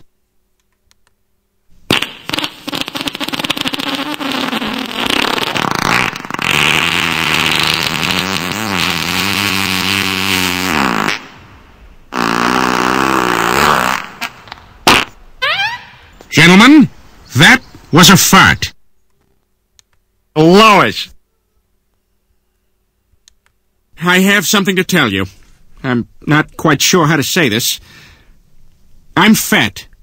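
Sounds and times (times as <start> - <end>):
cartoon fart sound effect: 1.9 - 11.3, 12.1 - 15.9.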